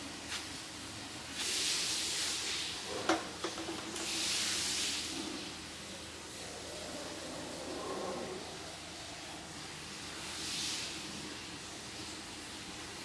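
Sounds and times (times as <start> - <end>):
water hiss: 1.3 - 2.8, 4.0 - 5.6.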